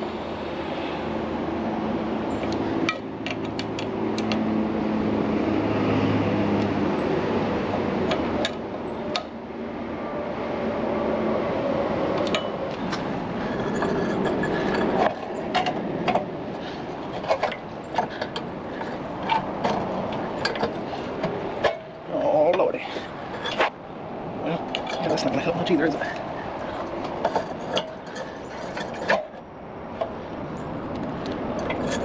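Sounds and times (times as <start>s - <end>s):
hand tools and metal parts clinking: 2.3s - 4.5s, 12.2s - 23.8s, 24.5s - 32.0s.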